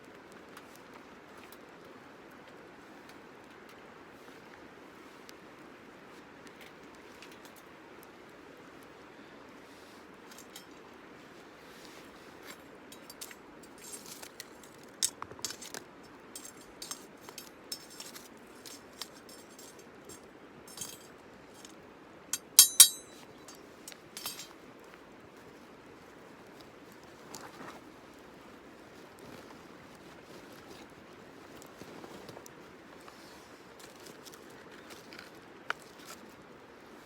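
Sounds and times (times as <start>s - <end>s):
metal cookware clinking: 12.9s - 14.0s, 16.4s - 21.7s, 22.4s - 24.5s.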